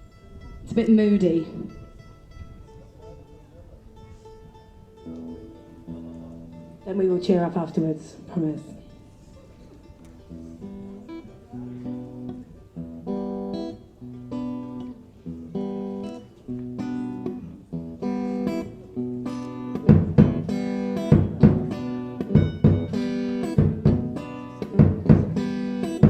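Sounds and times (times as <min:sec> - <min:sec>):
acoustic guitar chords: 0:09.8 - 0:26.0
heavy percussive thumps: 0:19.8 - 0:24.2, 0:24.8 - 0:25.5.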